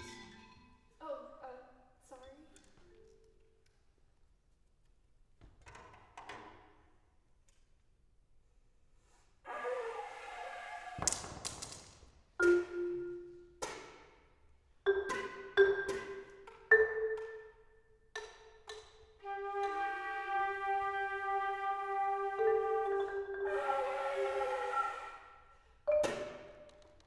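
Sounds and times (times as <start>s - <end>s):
flute: 9.5s - 11.2s, 19.2s - 26.5s
ringing marimba strikes: 12.4s - 13.4s, 14.9s - 17.6s, 25.9s - 26.6s.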